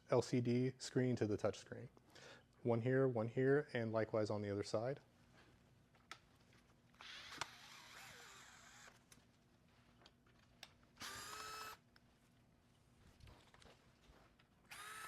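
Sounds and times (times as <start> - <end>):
electric screwdriver whirring: 7.0 - 9.0, 11.0 - 11.8, 14.7 - 15.0.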